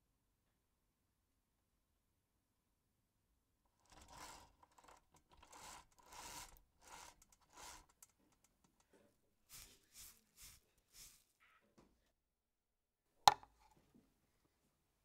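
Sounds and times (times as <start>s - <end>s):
scratchy rustling noises: 3.8s - 8.0s, 9.4s - 11.4s.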